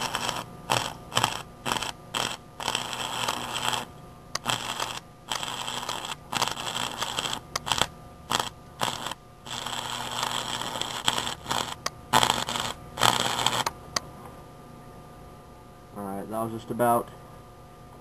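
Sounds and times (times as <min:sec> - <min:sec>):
welding arc crackling hiss: 0:00.0 - 0:13.8.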